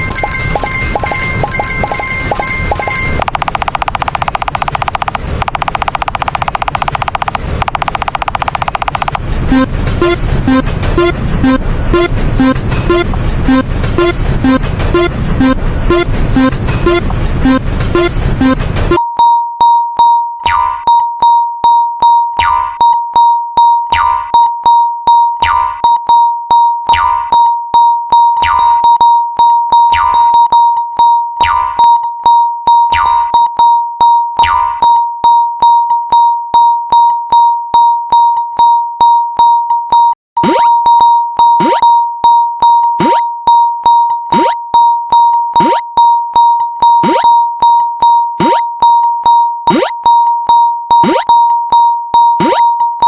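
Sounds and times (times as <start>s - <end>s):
railroad crossing alarm ringing: 0.0s - 9.2s
cartoon falling pitch effect: 40.4s - 40.8s, 41.6s - 41.8s, 43.0s - 43.2s, 44.3s - 44.6s, 45.6s - 45.8s, 47.0s - 47.3s, 48.4s - 48.6s, 49.7s - 49.9s, 51.0s - 51.3s, 52.4s - 52.6s
rising pitch sweep: 47.0s - 47.3s.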